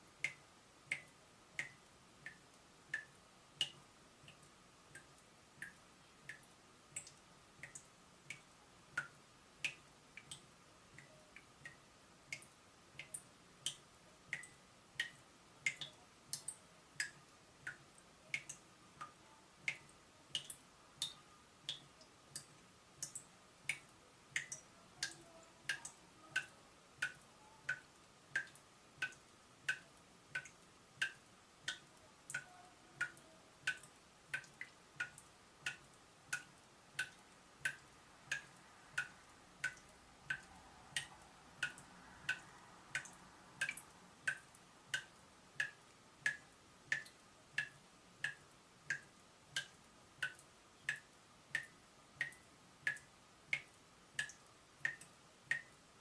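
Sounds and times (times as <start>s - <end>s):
water dripping from tap: 0.2s - 55.8s.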